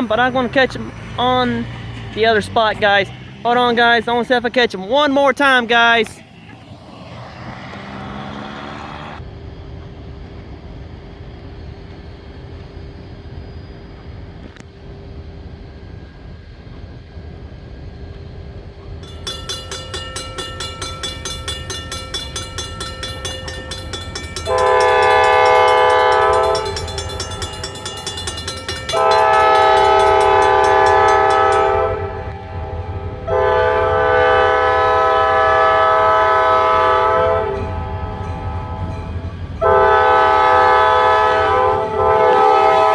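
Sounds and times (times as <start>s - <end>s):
diesel locomotives rumbling: 0.0s - 42.9s
locomotive bell ringing: 19.0s - 42.9s
locomotive air horn blasts: 24.4s - 42.9s.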